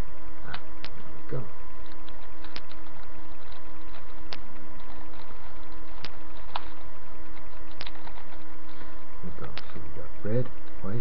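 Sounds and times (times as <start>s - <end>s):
microphone hiss and hum: 0.0s - 11.0s.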